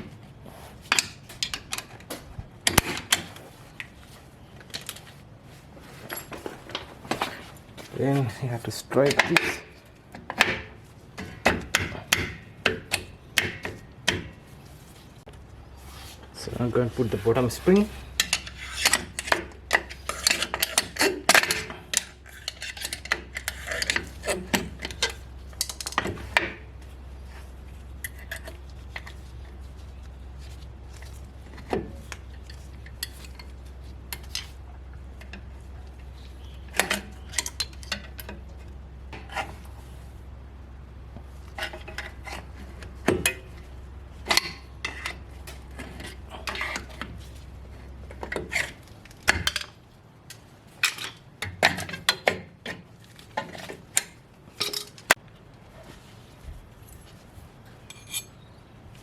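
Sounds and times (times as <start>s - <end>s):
steady low hum: 0.0s - 51.4s
metal brake parts clinking: 54.5s - 55.2s, 57.8s - 58.5s.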